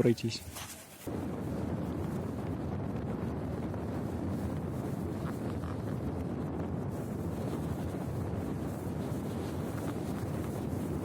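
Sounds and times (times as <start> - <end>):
wind rumble on microphone: 0.0 - 11.0.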